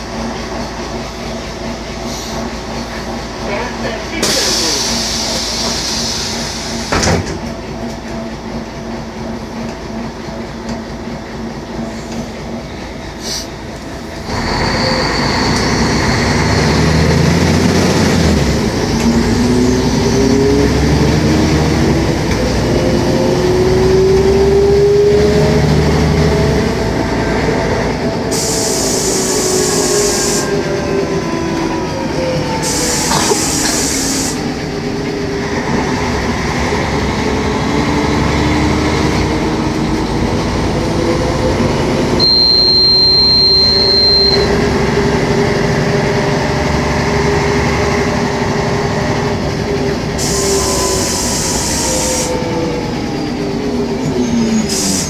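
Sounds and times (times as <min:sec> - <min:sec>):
bus diesel engine accelerating: 0:00.0 - 0:55.0
air hiss: 0:28.3 - 0:30.5, 0:32.6 - 0:34.4, 0:54.7 - 0:55.0.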